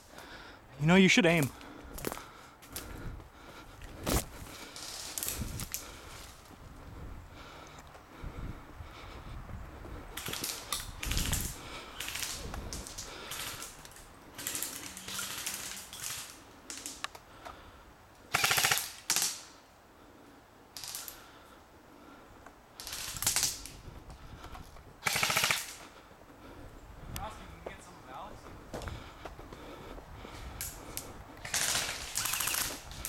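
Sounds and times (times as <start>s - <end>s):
airsoft guns full-auto bursts: 14.4s - 16.4s, 18.3s - 19.4s, 25.0s - 25.8s, 31.4s - 32.8s.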